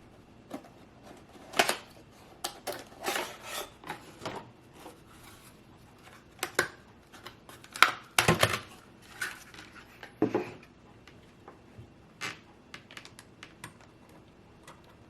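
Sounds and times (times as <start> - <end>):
packaging rustling and scraping: 0.0 - 6.4.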